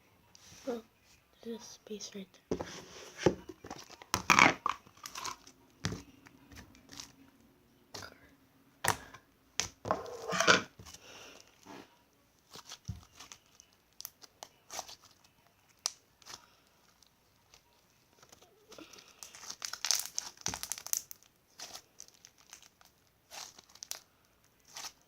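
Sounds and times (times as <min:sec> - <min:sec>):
slime squished by hand: 0:18.7 - 0:24.0, 0:24.6 - 0:25.0.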